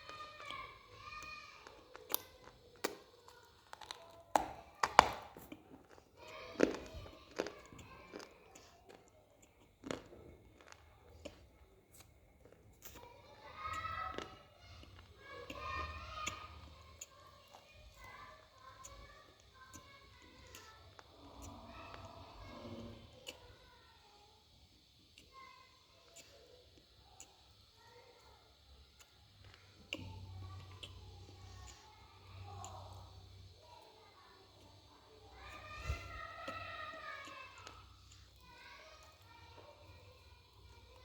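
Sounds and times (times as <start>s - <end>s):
clay being chewed: 0.0s - 23.6s, 29.0s - 33.4s
mouth click from chewing: 1.7s - 4.6s, 5.3s - 13.1s, 29.0s - 31.9s.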